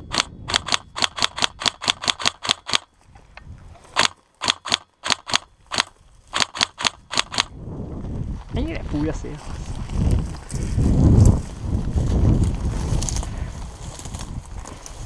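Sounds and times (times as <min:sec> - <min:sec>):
airsoft gun shots: 0:04.0 - 0:07.5.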